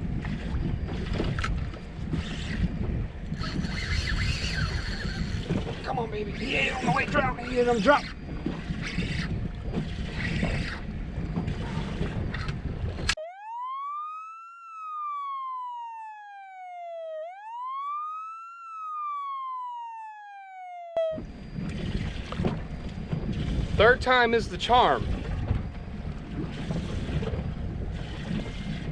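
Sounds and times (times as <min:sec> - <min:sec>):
wind noise on microphone: 0:00.0 - 0:13.2, 0:21.1 - 0:28.9
boat noise: 0:00.0 - 0:28.9
siren sound effect: 0:13.1 - 0:22.2.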